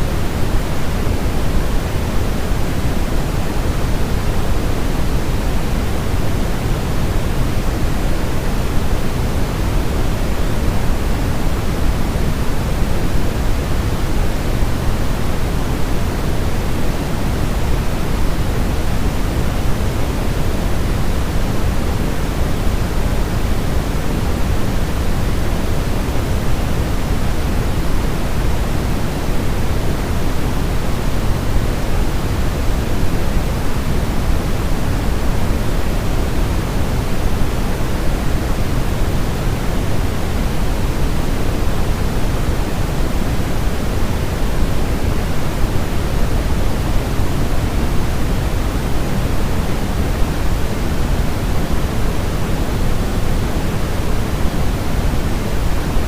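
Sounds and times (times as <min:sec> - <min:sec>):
pink noise hiss: 0:00.0 - 0:56.0.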